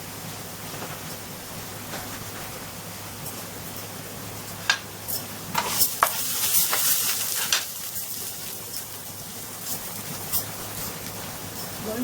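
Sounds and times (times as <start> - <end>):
spices sizzling in a pan: 3.2 - 12.0
spoon scraping a pan: 5.1 - 8.2.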